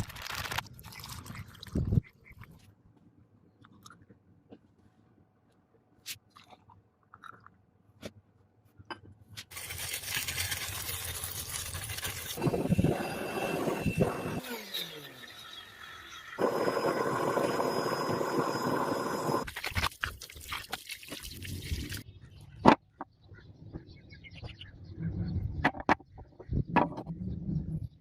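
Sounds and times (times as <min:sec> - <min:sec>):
harsh grinding on steel: 0:12.2 - 0:19.4
thin whine: 0:12.4 - 0:19.5.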